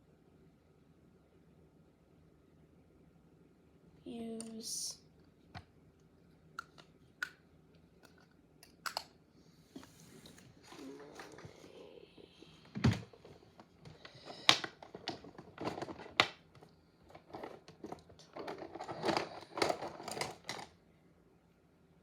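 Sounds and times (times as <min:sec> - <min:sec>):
makeup items clicking: 0:06.6 - 0:07.4.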